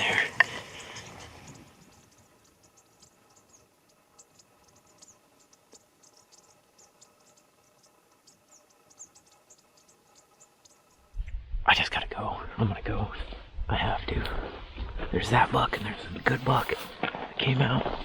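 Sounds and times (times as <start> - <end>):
faint high-pitched chirps: 0.0 - 11.4.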